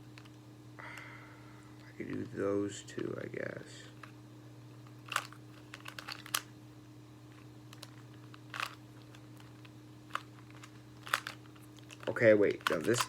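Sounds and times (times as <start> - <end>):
plastic puzzle clicking: 10.1 - 13.0.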